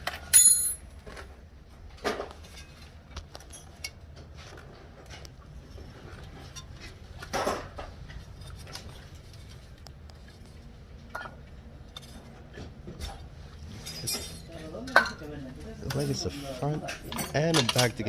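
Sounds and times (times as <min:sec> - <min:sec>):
metal parts clinking: 0:00.0 - 0:00.8, 0:16.9 - 0:18.0
parts rattling: 0:15.8 - 0:18.0.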